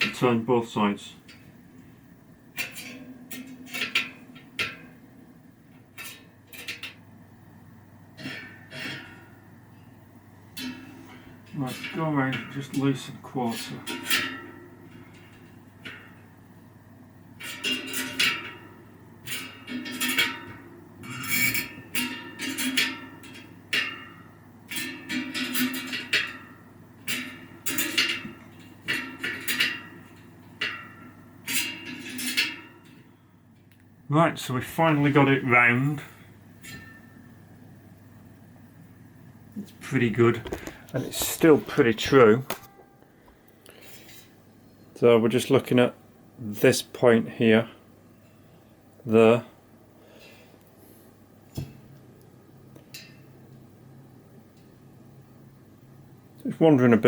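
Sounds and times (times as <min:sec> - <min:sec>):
spokes ringing: 0:08.1 - 0:33.8.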